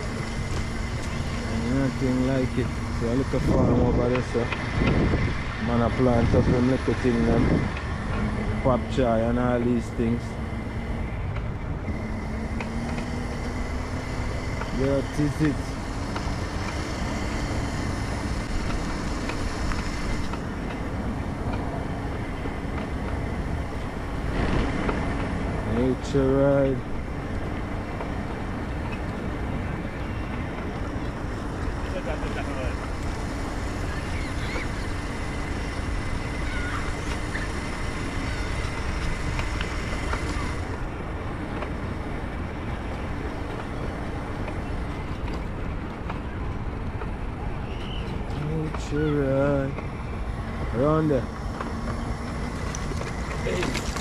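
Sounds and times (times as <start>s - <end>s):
wind on microphone: 0.0s - 9.3s
scooter running: 0.0s - 54.0s
wind rumbling on microphone: 0.0s - 54.0s.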